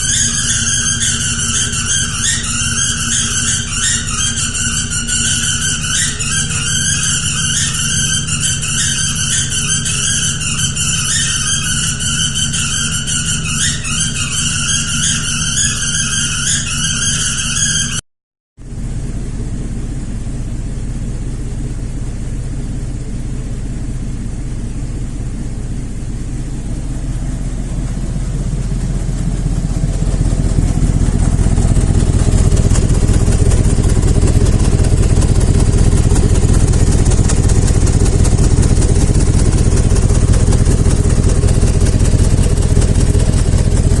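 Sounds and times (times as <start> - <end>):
engine idling and revving: 0.0 - 18.0, 18.6 - 44.0
high-pitched exhaust squeal: 0.0 - 18.0, 18.6 - 44.0.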